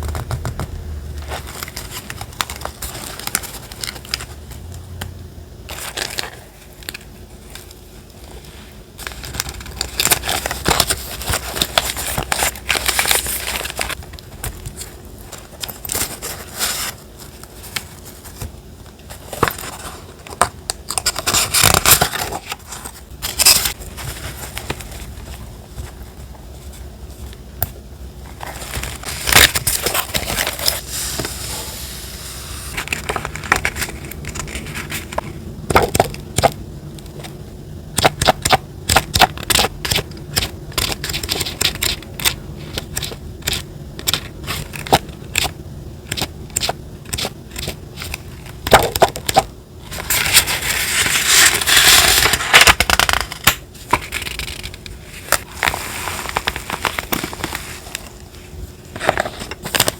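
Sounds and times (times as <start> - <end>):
paper crinkling and rustling: 0.0 - 4.6, 5.7 - 27.3, 28.3 - 35.3, 49.8 - 59.9.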